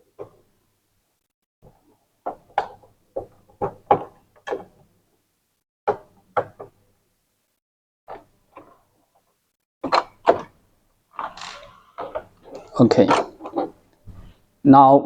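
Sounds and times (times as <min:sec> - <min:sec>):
plastic parts clacking and knocking: 0:09.8 - 0:14.4.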